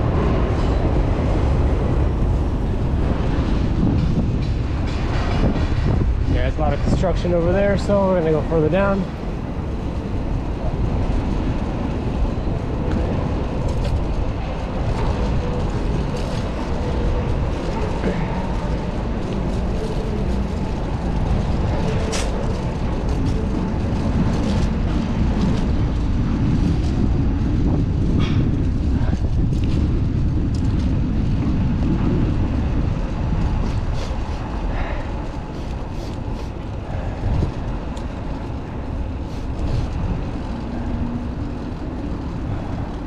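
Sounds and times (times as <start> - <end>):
wind buffeting microphone: 0.0 - 43.0.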